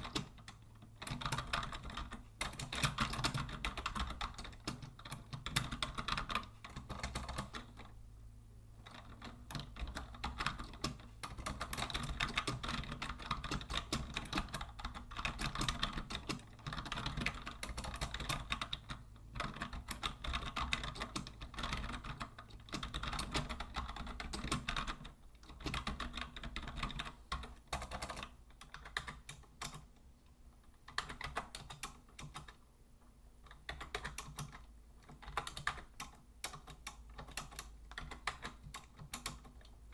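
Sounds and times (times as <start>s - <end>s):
faint low hum: 0.0s - 39.9s
keyboard typing clicks: 8.8s - 29.9s, 30.8s - 32.6s, 33.5s - 39.8s.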